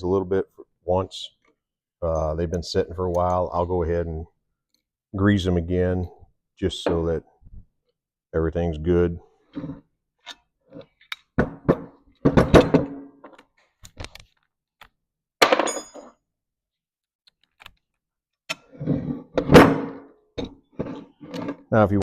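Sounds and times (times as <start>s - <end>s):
metal parts clunking on workbench: 11.0s - 13.4s.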